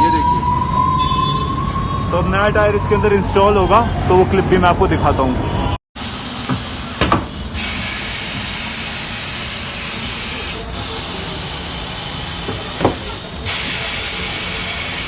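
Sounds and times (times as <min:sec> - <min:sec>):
compressed air hissing: 0:06.0 - 0:15.0.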